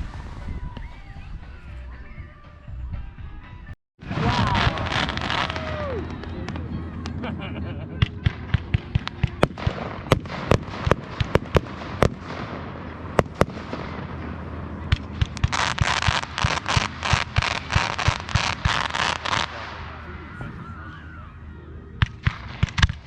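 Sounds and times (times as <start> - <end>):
fireworks bangs and pops: 4.0 - 7.2, 8.0 - 20.0, 22.0 - 23.0
fireworks crackling bursts: 4.0 - 7.4, 8.0 - 20.1, 22.0 - 23.0.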